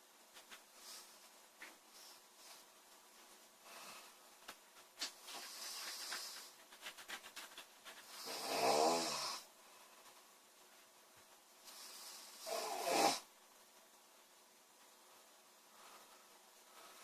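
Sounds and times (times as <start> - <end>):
girl snoring: 8.2 - 9.5, 11.8 - 13.3.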